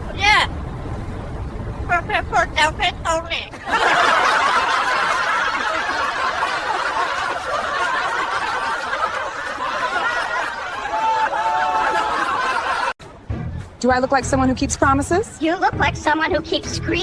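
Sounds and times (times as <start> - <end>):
group of people laughing: 3.5 - 13.0.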